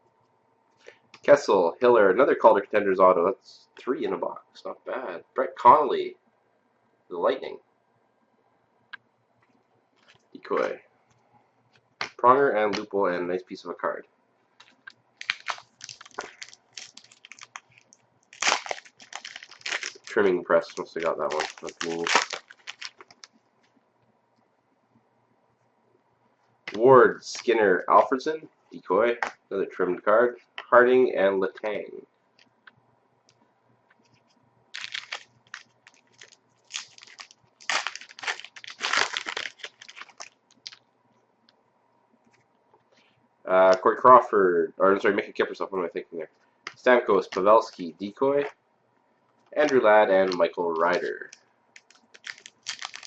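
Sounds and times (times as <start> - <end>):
card pack wrapper crinkling: 14.6 - 23.3, 34.8 - 40.8, 49.6 - 53.0.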